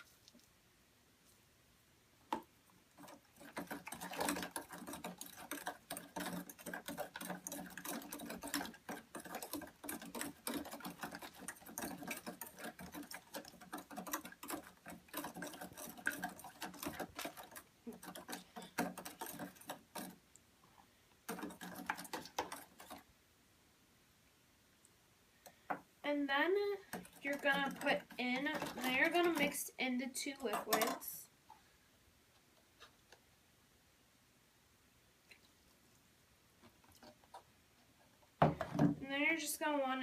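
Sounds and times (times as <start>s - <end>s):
plastic spoon stirring in bowl: 2.3s - 23.1s, 25.4s - 31.4s, 36.6s - 40.0s.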